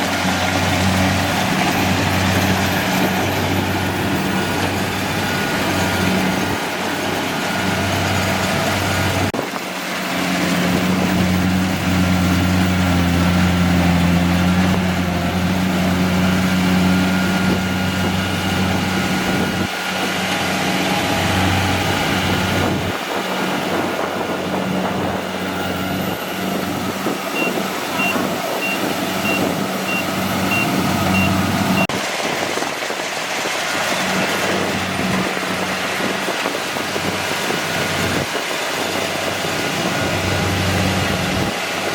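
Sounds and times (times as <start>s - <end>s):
combine harvester diesel engine: 0.0s - 41.9s
high warning beeps: 27.3s - 31.9s.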